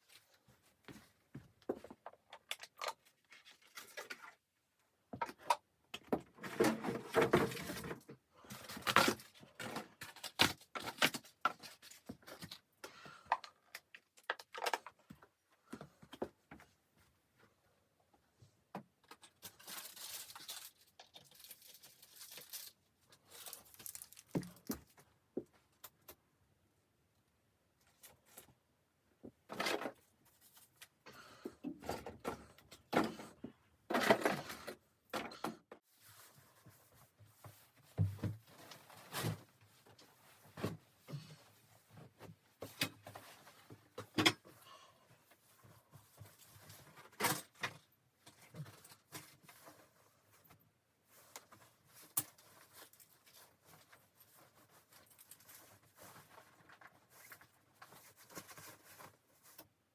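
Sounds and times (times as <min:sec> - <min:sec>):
objects being handled: 0:18.8 - 0:26.2, 0:29.2 - 0:59.9.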